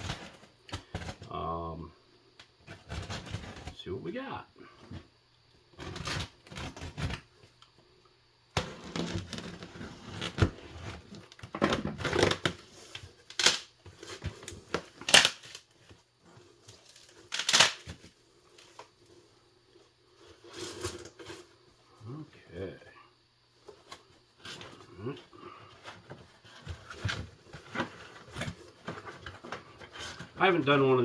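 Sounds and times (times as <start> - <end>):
packaging rustling and crinkling: 0.0 - 1.3, 8.6 - 19.3, 25.8 - 31.0
tape tearing rips: 13.3 - 13.7, 15.0 - 15.7, 17.2 - 18.0.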